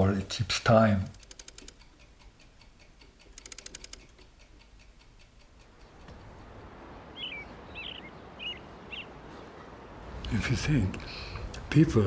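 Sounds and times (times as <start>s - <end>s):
watch ticking: 0.0s - 6.7s
outdoor background noise: 0.0s - 12.0s
small bird chirping: 5.6s - 10.0s.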